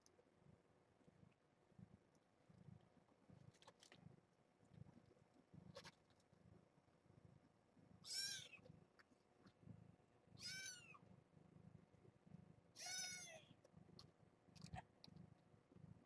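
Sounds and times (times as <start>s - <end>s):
kittens mewing: 8.1s - 8.6s, 10.4s - 11.0s, 12.8s - 13.5s.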